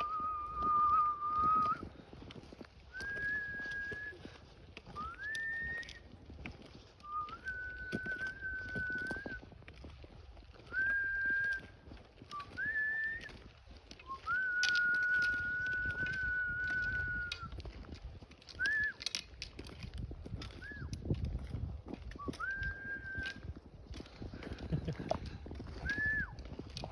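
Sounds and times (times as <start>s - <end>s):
person whistling long notes: 0.0s - 1.9s, 2.9s - 6.1s, 7.0s - 9.4s, 10.6s - 17.6s, 18.6s - 19.2s, 20.4s - 21.0s, 22.1s - 23.5s, 24.6s - 26.9s.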